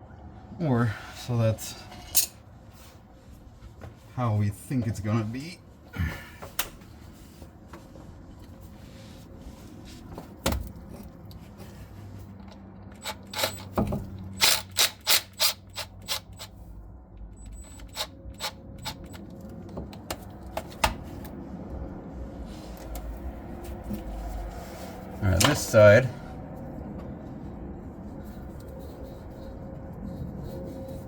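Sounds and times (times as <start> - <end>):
tools and metal parts clicking: 12.4 - 16.6.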